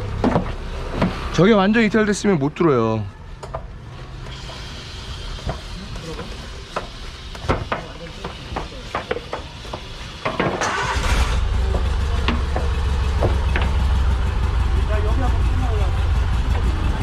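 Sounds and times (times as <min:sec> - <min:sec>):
engine starting with hiss: 0:04.2 - 0:06.3, 0:10.4 - 0:12.2
engine idling deeply: 0:10.7 - 0:17.0.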